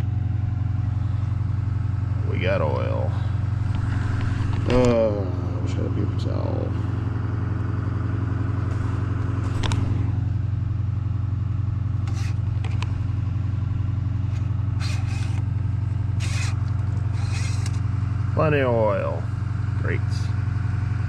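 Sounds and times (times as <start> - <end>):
engine idling: 0.0 - 21.0
dipstick scraping: 12.0 - 13.1, 14.2 - 17.9.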